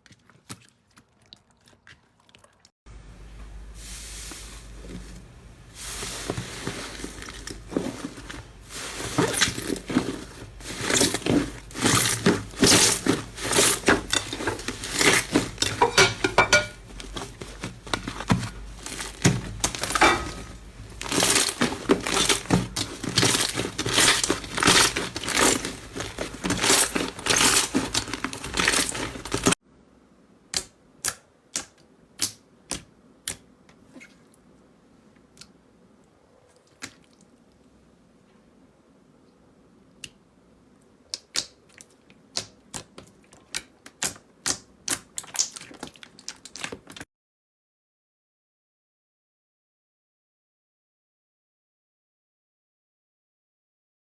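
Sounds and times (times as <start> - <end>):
slime crackling and popping: 42.4 - 47.0.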